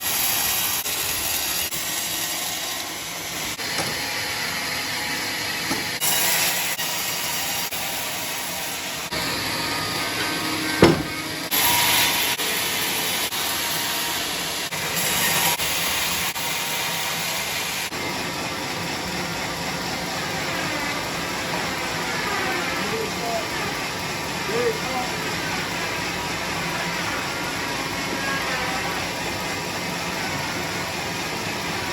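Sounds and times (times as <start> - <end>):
saw rasping through wood: 0.0 - 16.4.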